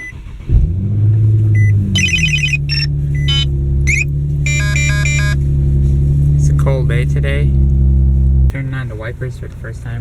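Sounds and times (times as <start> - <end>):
car engine starting and idling: 0.0 - 10.0
short electronic beeps: 1.6 - 5.4
car chime melodies: 2.0 - 5.4.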